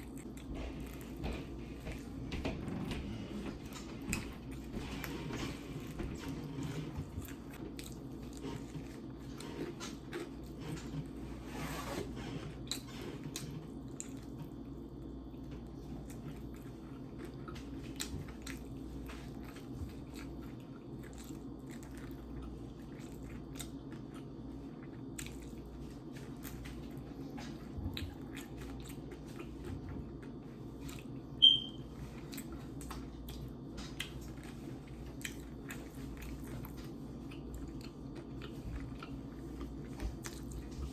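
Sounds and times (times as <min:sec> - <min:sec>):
chewing and biting: 0:00.0 - 0:40.9
low background hum: 0:00.0 - 0:40.9
short high-pitched squeak: 0:31.4 - 0:31.8.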